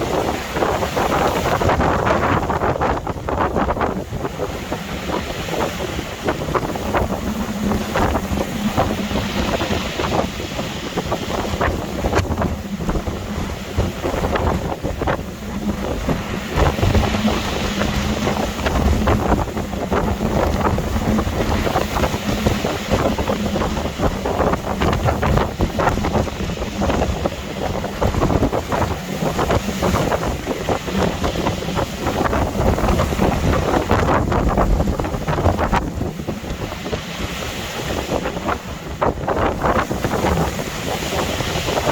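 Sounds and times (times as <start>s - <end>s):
sea waves washing: 0.0s - 41.9s
storm wind buffeting microphone: 0.0s - 41.9s.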